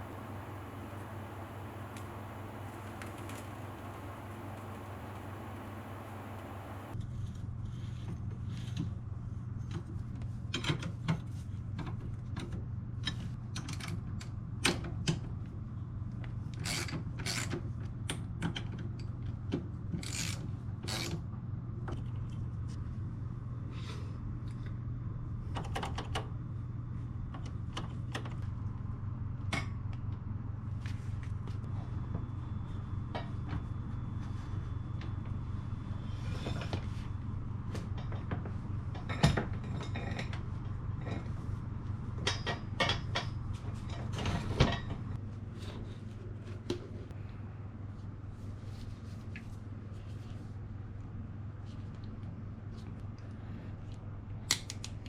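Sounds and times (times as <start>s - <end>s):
steady low hum: 0.0s - 7.0s.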